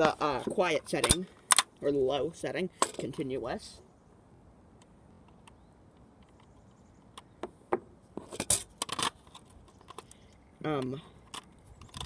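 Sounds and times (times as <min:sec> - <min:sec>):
clicks and rattles of handled device: 0:08.2 - 0:10.4, 0:11.2 - 0:12.0.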